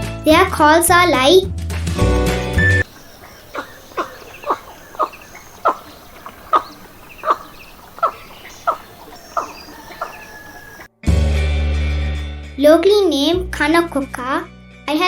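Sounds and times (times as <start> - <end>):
faint small bird chirps: 2.8 - 10.9
heron croaking: 2.8 - 10.9.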